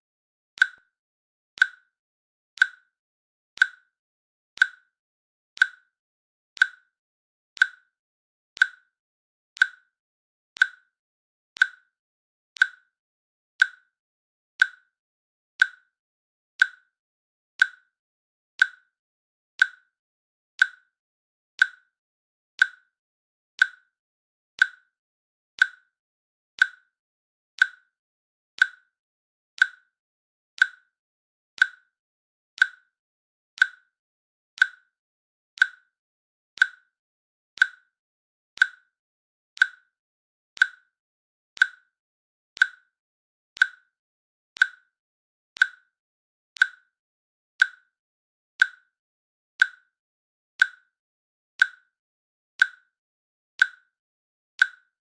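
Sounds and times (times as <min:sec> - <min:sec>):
timer clicks: 0:00.6 - 0:00.9, 0:01.6 - 0:01.9, 0:02.6 - 0:02.9, 0:03.6 - 0:03.9, 0:04.6 - 0:04.9, 0:05.6 - 0:05.9, 0:06.6 - 0:07.0, 0:07.6 - 0:07.9, 0:08.6 - 0:09.0, 0:09.6 - 0:09.9, 0:10.6 - 0:11.0, 0:11.6 - 0:12.0, 0:12.6 - 0:12.9, 0:13.6 - 0:13.9, 0:14.6 - 0:14.9, 0:15.6 - 0:15.9, 0:16.6 - 0:16.9, 0:17.6 - 0:17.9, 0:18.6 - 0:18.9, 0:19.6 - 0:20.0, 0:20.6 - 0:20.9, 0:21.6 - 0:21.9, 0:22.6 - 0:22.9, 0:23.6 - 0:24.0, 0:24.6 - 0:25.0, 0:25.6 - 0:26.0, 0:26.6 - 0:27.0, 0:27.6 - 0:28.0, 0:28.6 - 0:29.0, 0:29.6 - 0:30.0, 0:30.6 - 0:31.0, 0:31.6 - 0:32.0, 0:32.6 - 0:33.0, 0:33.6 - 0:34.0, 0:34.6 - 0:35.0, 0:35.6 - 0:36.0, 0:36.6 - 0:37.0, 0:37.6 - 0:38.0, 0:38.6 - 0:39.0, 0:39.6 - 0:40.0, 0:40.6 - 0:41.0, 0:41.6 - 0:42.0, 0:42.6 - 0:43.0, 0:43.6 - 0:44.0, 0:44.6 - 0:45.0, 0:45.6 - 0:46.0, 0:46.6 - 0:47.0, 0:47.6 - 0:48.0, 0:48.6 - 0:48.9, 0:49.6 - 0:50.0, 0:50.6 - 0:50.9, 0:51.6 - 0:51.9, 0:52.6 - 0:52.9, 0:53.6 - 0:53.9, 0:54.6 - 0:55.0.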